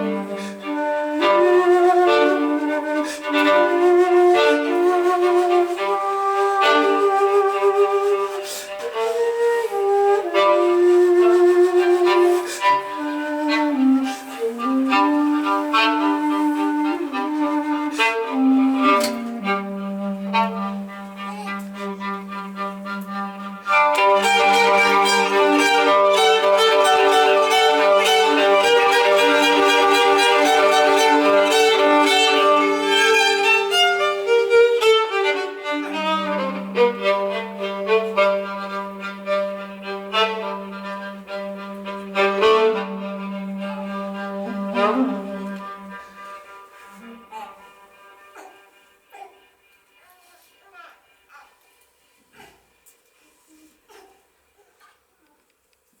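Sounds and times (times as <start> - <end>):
violin melody: 0.0 - 48.3
instrumental accompaniment: 0.0 - 49.8.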